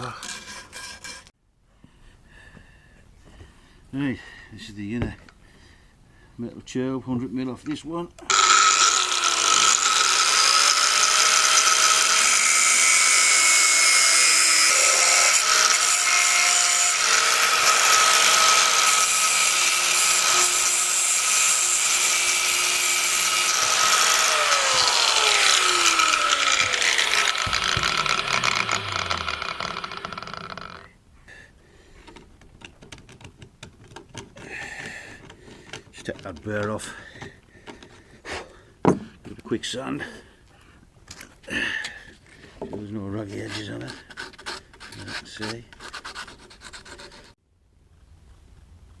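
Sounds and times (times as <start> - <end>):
power tool cutting metal tube: 8.3 - 30.9.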